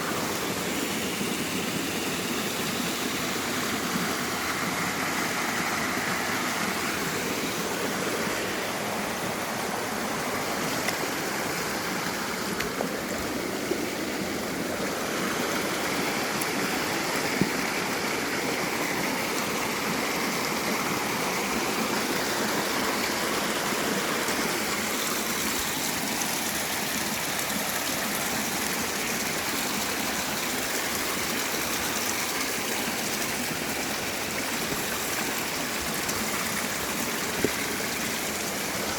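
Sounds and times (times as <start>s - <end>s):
water rushing over rocks: 0.0s - 38.9s.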